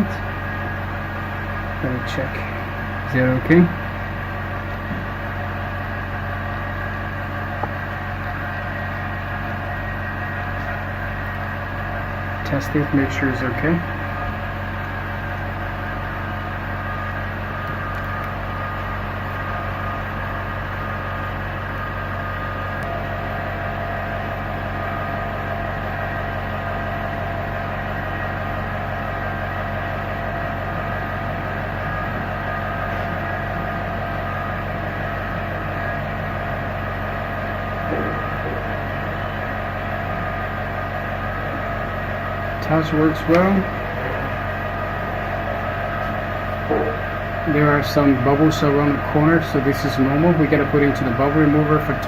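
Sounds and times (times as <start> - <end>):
workshop machinery humming: 0.0 - 52.0.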